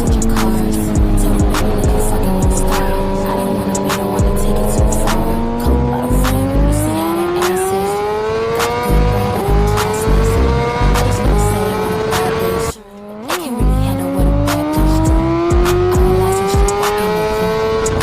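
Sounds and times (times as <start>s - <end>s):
motorcycle engine accelerating: 0.0s - 18.0s
rap track with heavy bass: 0.0s - 18.0s.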